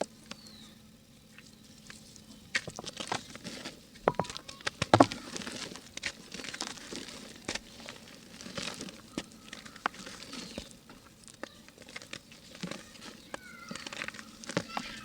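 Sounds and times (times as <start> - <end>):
dry mud crumbling by hand: 4.1 - 15.0.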